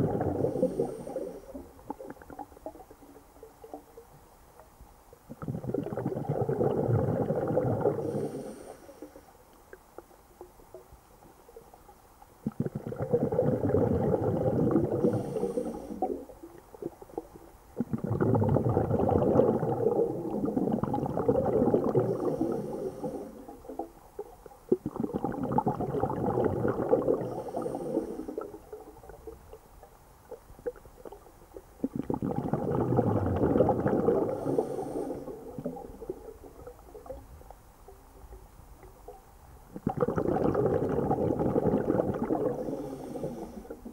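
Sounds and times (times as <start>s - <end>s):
exhaled bubbles gurgling underwater: 0.0s - 43.9s.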